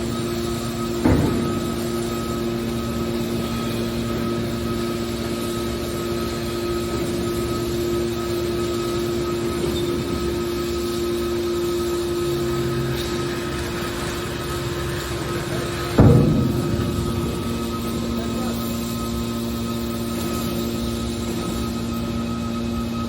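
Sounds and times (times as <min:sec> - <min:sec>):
hydraulic power unit humming: 0:00.0 - 0:23.0
sharp metallic bang: 0:01.0 - 0:02.5, 0:15.6 - 0:20.3.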